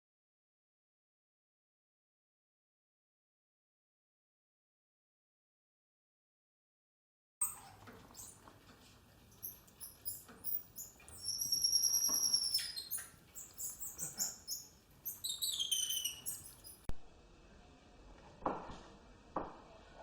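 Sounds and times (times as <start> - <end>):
small animals squeaking and chirping: 7.4 - 8.4, 9.3 - 16.9.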